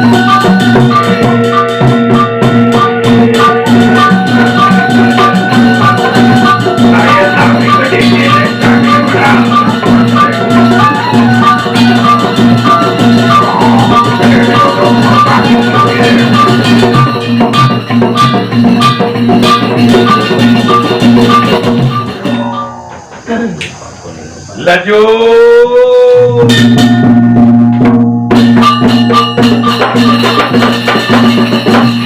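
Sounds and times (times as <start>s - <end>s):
repeated high note: 0.0s - 23.1s
gamelan ensemble playing: 0.0s - 23.2s, 26.5s - 32.0s
sustained low tones: 0.0s - 29.5s
drums: 0.0s - 32.0s.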